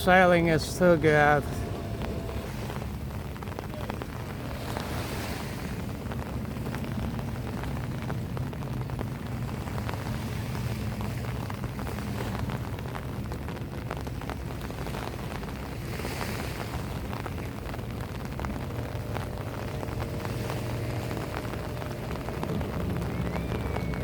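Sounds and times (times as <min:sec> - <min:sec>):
raindrops ticking: 0:00.0 - 0:24.0
surf rumble: 0:00.0 - 0:24.0
wind: 0:00.0 - 0:24.0.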